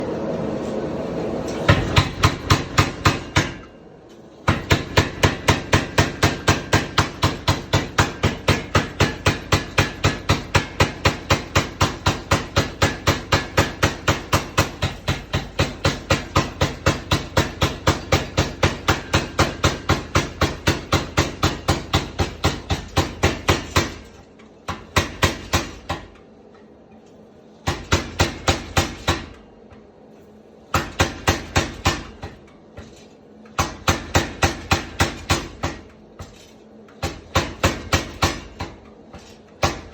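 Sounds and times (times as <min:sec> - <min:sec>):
steady machine hum: 0:00.0 - 0:39.9.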